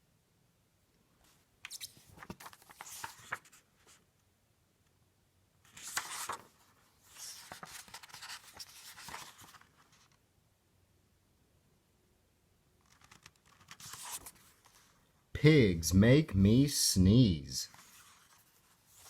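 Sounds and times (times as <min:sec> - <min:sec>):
paper pages rustling: 0:01.2 - 0:04.0, 0:05.7 - 0:10.2, 0:12.8 - 0:15.0, 0:17.7 - 0:19.0.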